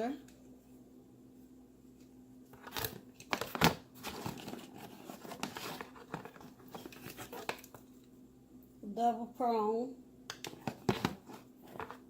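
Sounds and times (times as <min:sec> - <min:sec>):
packaging crinkling and rustling: 0:02.5 - 0:07.9, 0:10.5 - 0:12.0.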